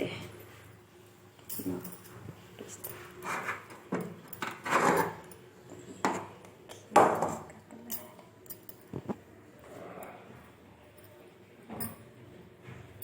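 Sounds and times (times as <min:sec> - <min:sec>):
metal utensils clinking: 0:01.5 - 0:05.4.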